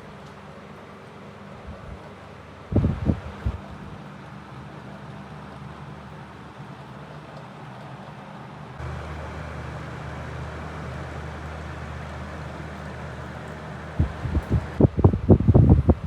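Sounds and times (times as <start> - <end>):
fan motor hum: 0.0 - 16.0
rush of moving air: 13.9 - 16.0.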